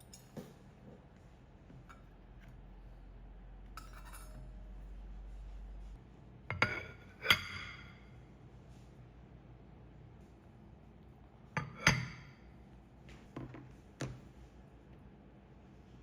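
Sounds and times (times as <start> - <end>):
low hum: 2.0 - 6.0
tableware clinking on table: 3.8 - 4.6, 6.5 - 8.0, 11.6 - 12.3.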